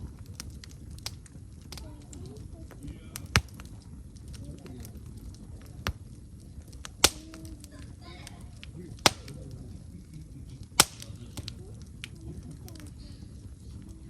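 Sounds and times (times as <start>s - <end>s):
wood fire crackling: 0.0s - 14.0s
sharp loud pops: 6.8s - 7.6s, 8.9s - 9.5s, 10.7s - 11.6s.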